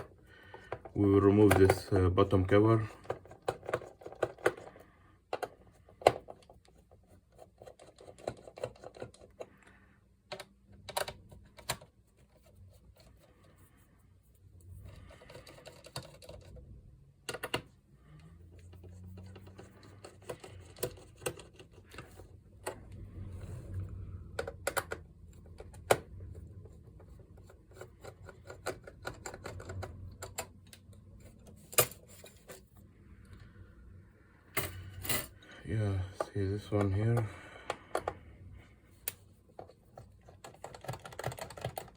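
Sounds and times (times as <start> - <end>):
steady low hum: 17.6 - 40.2.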